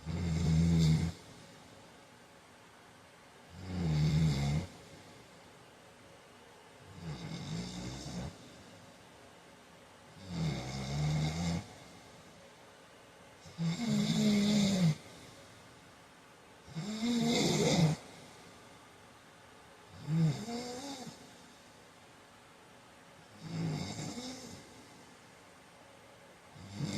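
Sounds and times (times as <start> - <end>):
man snoring loudly: 0.0 - 1.2, 3.5 - 4.8, 6.9 - 8.4, 10.2 - 11.7, 13.4 - 15.0, 16.7 - 18.1, 19.9 - 21.2, 23.4 - 24.7, 26.6 - 26.9.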